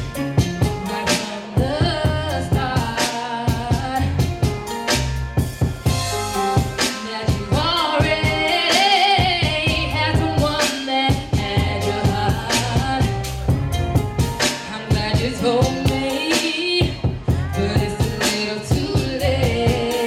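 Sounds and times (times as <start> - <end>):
pop backing track with drums: 0.0 - 20.0
person singing with vibrato: 0.6 - 4.5, 6.8 - 13.4, 14.5 - 20.0.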